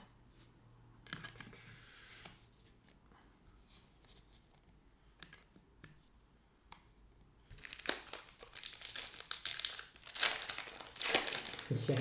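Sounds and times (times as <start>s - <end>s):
foil wrapper crinkling: 7.6s - 12.0s.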